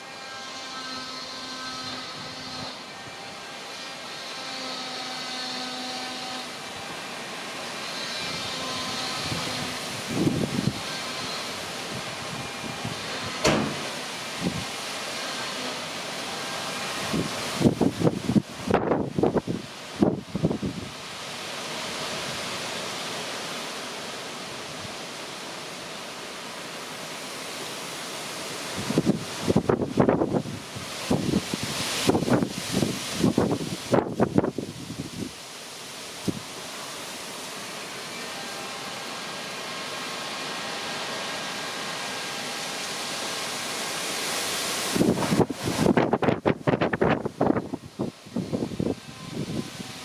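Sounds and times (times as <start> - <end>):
wind blowing through trees: 0.0 - 50.0
wind buffeting microphone: 9.1 - 10.9, 17.0 - 20.9, 28.8 - 35.3, 44.9 - 50.0.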